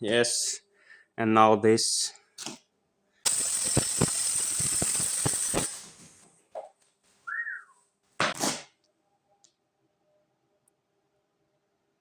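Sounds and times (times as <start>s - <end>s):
welding arc crackling hiss: 3.3s - 6.2s
whistle-like note: 7.3s - 7.8s.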